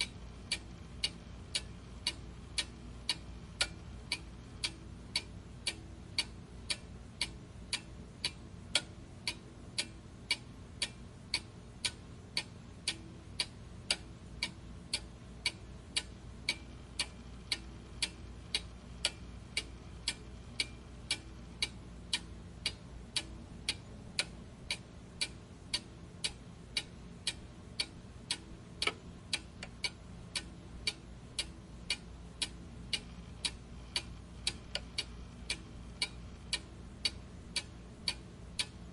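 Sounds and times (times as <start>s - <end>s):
steady ticking: 0.0s - 38.9s.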